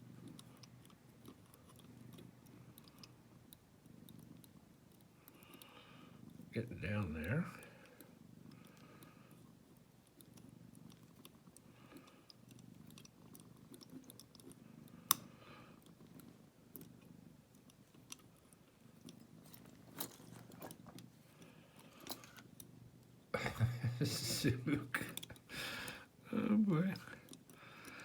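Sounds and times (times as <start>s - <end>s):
metallic clicks of lock picking: 21.9s - 22.6s.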